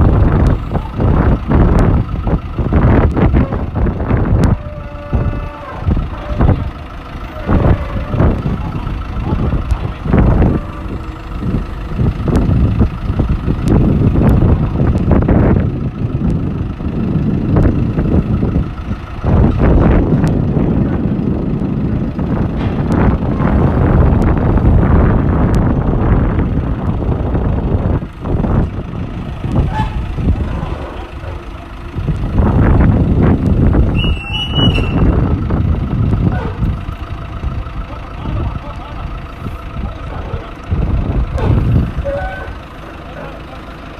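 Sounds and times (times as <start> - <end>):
engine running unevenly: 0.0 - 43.9
short high squeal: 34.0 - 35.1.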